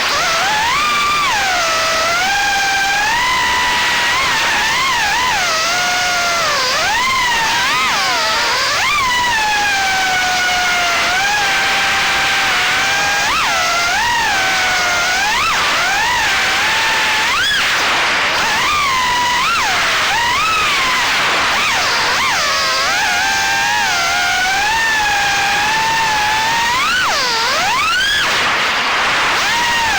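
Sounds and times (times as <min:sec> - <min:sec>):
quadcopter motors whining: 0:00.0 - 0:29.9.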